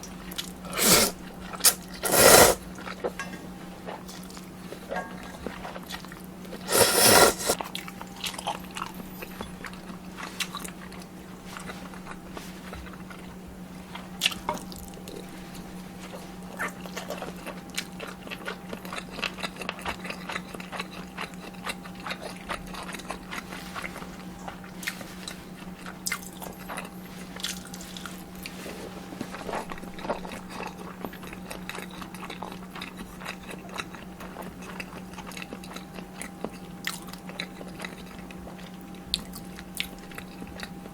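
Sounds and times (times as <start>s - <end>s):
steady low hum: 0.0s - 8.0s
chewing with clicks and crunches: 3.8s - 40.9s.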